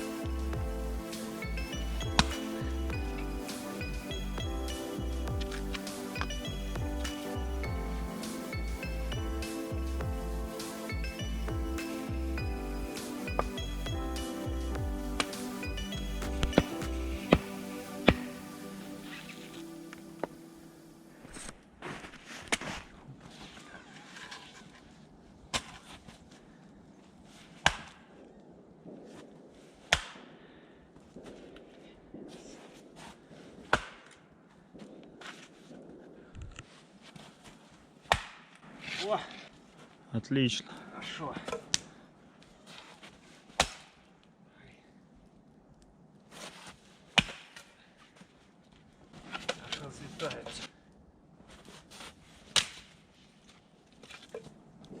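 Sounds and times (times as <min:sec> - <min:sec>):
axe chopping firewood: 0:02.2 - 0:02.4, 0:13.3 - 0:13.7, 0:16.2 - 0:18.4, 0:25.5 - 0:25.9, 0:27.6 - 0:28.0, 0:29.9 - 0:30.2, 0:33.6 - 0:34.2, 0:38.1 - 0:38.6, 0:43.5 - 0:44.0, 0:47.1 - 0:47.7, 0:52.5 - 0:52.9
axe splitting firewood: 0:16.3 - 0:18.3.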